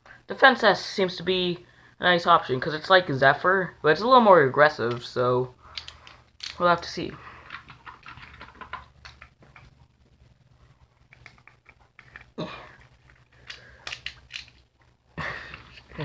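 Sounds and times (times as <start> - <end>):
plastic parts clicking and rattling: 5.7 - 6.7, 7.4 - 9.7, 11.0 - 14.7.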